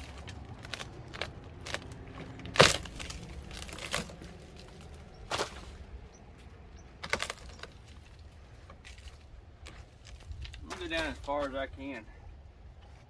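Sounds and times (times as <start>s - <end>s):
wood cracking and knocking: 0.0s - 5.8s, 7.0s - 11.5s.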